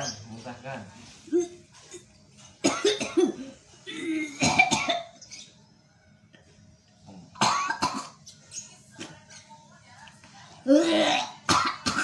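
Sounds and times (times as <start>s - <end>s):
person coughing up phlegm: 2.6s - 5.2s, 7.3s - 8.2s, 10.7s - 12.0s.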